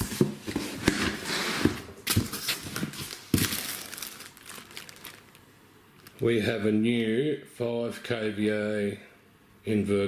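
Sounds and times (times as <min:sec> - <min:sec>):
packing material rustling: 0:00.0 - 0:06.2.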